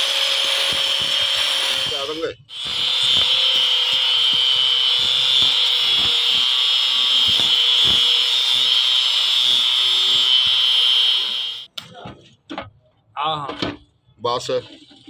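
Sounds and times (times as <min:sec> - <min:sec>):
power tool whining: 0:00.0 - 0:11.7.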